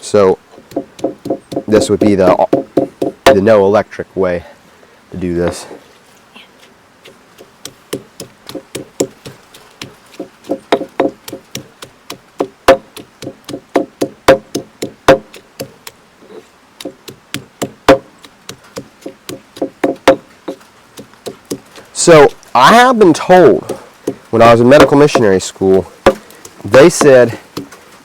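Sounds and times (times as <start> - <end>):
garlic being crushed knocking: 0.6 - 3.4, 7.1 - 16.0, 16.8 - 21.7, 23.5 - 27.8.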